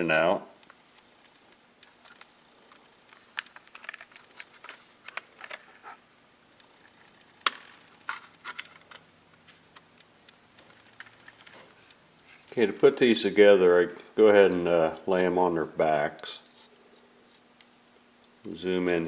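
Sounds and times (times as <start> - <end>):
plastic packaging clicks and rustles: 0.6 - 5.8, 6.8 - 12.6.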